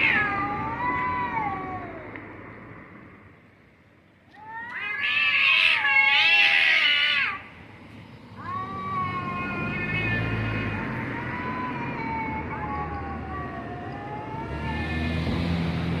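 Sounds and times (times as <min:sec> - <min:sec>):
cats yowling: 0:00.0 - 0:02.4, 0:04.3 - 0:07.5, 0:08.4 - 0:15.2.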